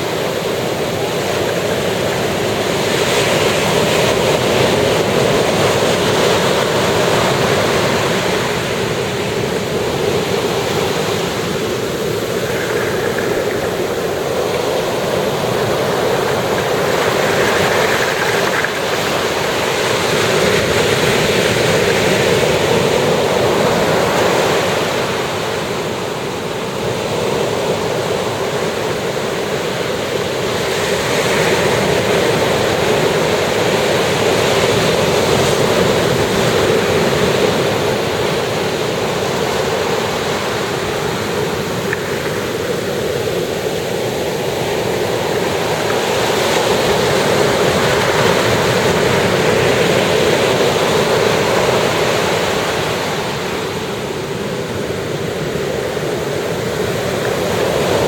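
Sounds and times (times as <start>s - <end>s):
ocean surf breaking: 0.0s - 58.0s.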